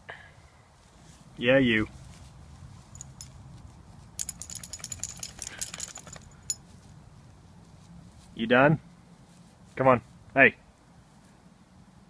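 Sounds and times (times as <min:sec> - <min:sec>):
metal dog collar tags jingling: 0:02.8 - 0:03.4, 0:04.2 - 0:06.7.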